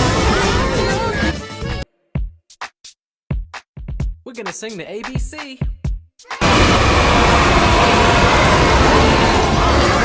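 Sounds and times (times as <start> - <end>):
children yelling and cheering: 6.3 - 10.0.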